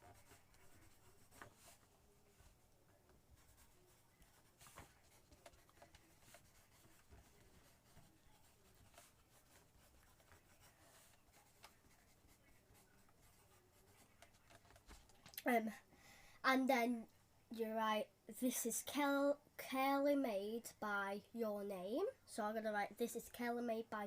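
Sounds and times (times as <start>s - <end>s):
pencil scratching on paper: 0.0s - 2.6s, 3.4s - 15.0s.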